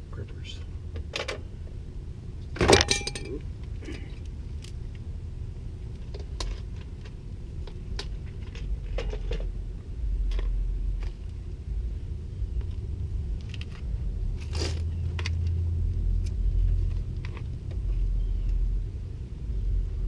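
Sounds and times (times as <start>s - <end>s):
steady low rumble: 0.0s - 20.0s
metal tools clinking and rattling: 2.6s - 3.4s
sharp metallic clank with ringing: 2.7s - 3.4s.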